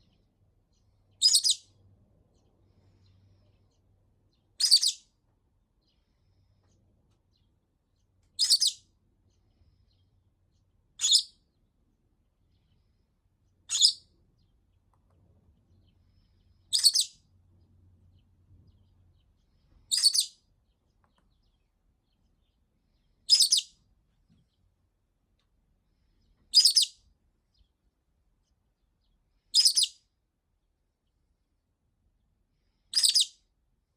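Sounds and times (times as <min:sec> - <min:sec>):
lovebird shrill calls: 0:01.2 - 0:01.7, 0:04.6 - 0:05.0, 0:08.4 - 0:08.8, 0:11.0 - 0:11.4, 0:13.7 - 0:14.0, 0:16.7 - 0:17.2, 0:19.9 - 0:20.4, 0:23.3 - 0:23.7, 0:26.5 - 0:26.9, 0:29.5 - 0:29.9, 0:32.9 - 0:33.3.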